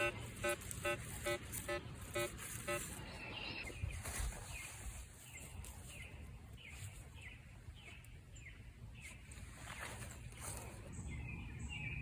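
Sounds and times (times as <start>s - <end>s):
bird chirping: 0.0s - 9.3s
faint outdoor background noise: 0.0s - 12.0s.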